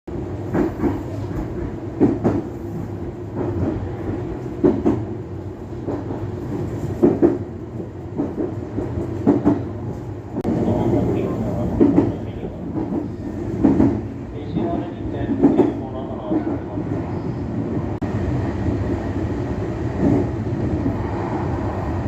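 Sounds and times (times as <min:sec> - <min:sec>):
train rumbling: 0:00.1 - 0:22.0.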